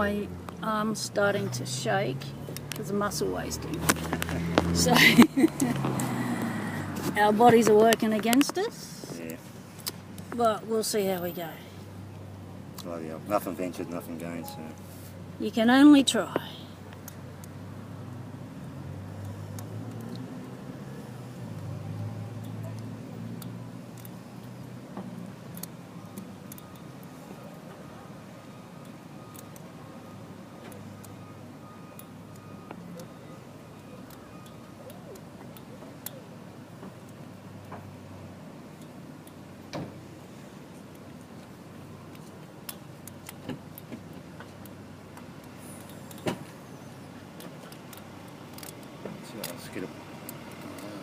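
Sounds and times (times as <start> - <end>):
outdoor background hum: 0.0 - 51.0
lock pick metallic ticks: 18.6 - 20.6, 21.5 - 27.6, 31.9 - 36.2, 38.7 - 39.4, 40.8 - 46.3, 47.4 - 50.9.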